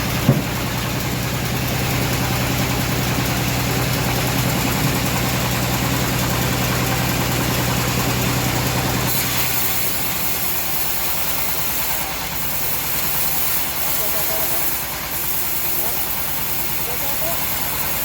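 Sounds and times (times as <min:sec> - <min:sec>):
bandsaw mill engine running: 0:00.0 - 0:18.0.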